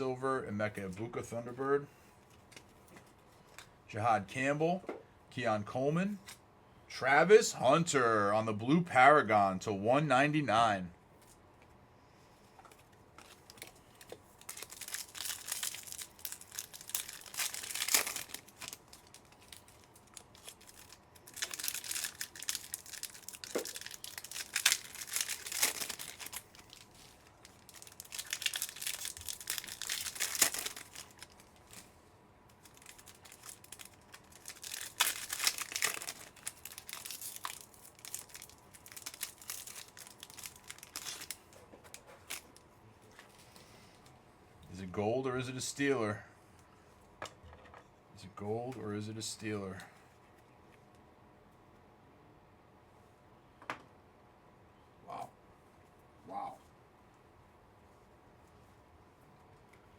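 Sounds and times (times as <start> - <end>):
foil wrappers tearing and crinkling: 13.2 - 31.9, 32.6 - 42.5.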